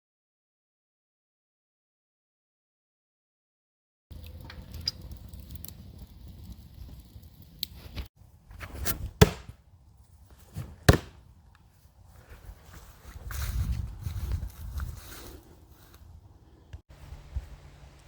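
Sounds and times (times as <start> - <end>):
sharp impacts: 8.8 - 9.6, 10.8 - 11.2.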